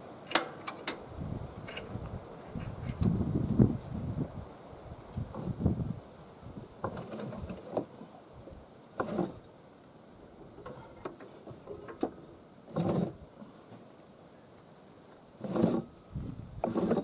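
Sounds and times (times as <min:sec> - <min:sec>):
mower deck scraping: 0:05.2 - 0:05.6, 0:06.8 - 0:08.0, 0:09.0 - 0:09.4, 0:10.4 - 0:13.8, 0:15.4 - 0:17.0.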